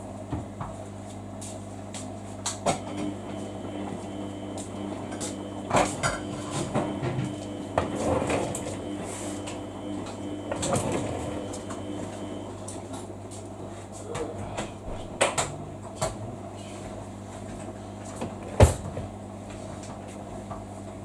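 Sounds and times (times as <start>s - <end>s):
washing machine motor humming: 2.4s - 21.0s.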